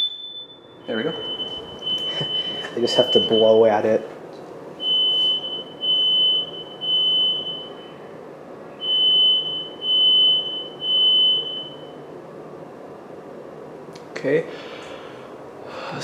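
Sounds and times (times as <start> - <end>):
smoke alarm beeping: 0.0 - 4.1, 4.8 - 8.0, 8.8 - 12.0.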